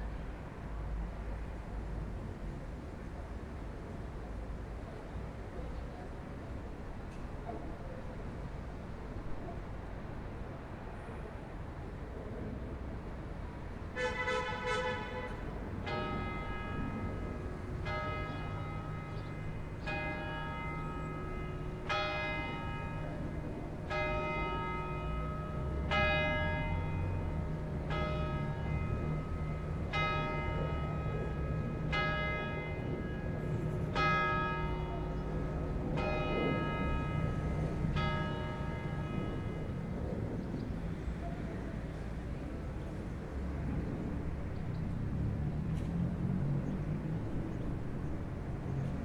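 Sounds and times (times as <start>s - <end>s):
church bell tolling: 14.0s - 40.4s.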